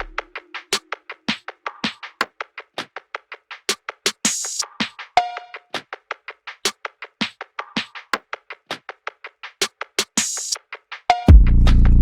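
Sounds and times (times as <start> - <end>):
electronic beat: 0.0 - 2.1, 11.2 - 12.0.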